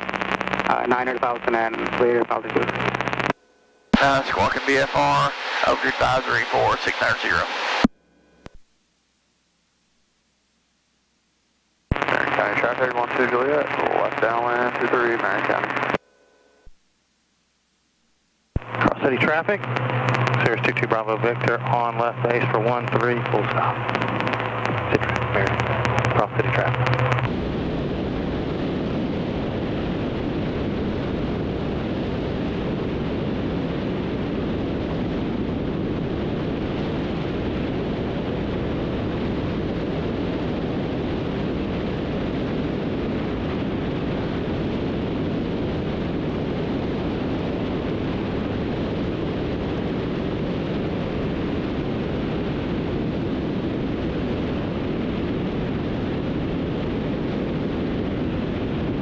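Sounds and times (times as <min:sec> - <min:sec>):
piston aircraft engines droning: 0:18.6 - 0:27.3.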